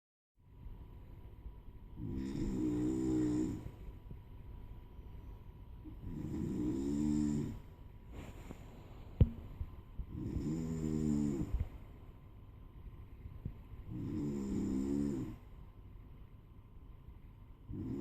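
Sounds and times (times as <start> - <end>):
man snoring: 2.0 - 3.8, 6.0 - 7.7, 10.1 - 11.6, 13.9 - 15.4, 17.7 - 18.0.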